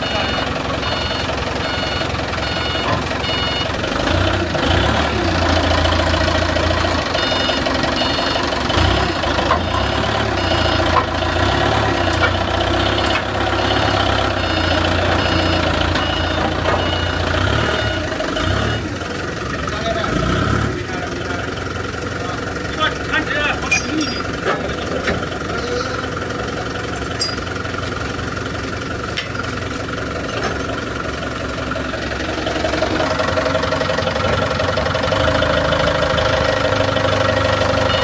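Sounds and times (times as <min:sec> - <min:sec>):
reversing alarm beeping: 0:00.0 - 0:03.9, 0:07.0 - 0:09.3, 0:10.4 - 0:11.0, 0:13.6 - 0:18.9, 0:27.2 - 0:27.5, 0:37.6 - 0:38.0
diesel machinery engine running: 0:00.0 - 0:38.0.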